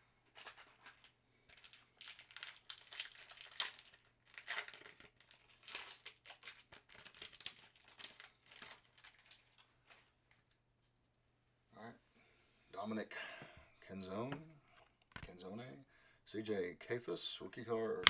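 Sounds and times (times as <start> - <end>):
foil wrapper crinkling and tearing: 0.3 - 10.1.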